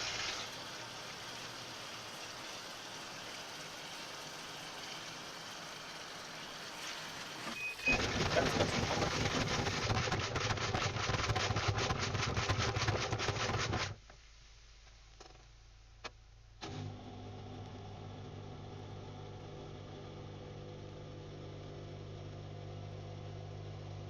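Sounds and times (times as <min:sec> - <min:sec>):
washing machine churning water: 0:00.0 - 0:13.9
rapid knocking and sloshing: 0:07.9 - 0:13.9.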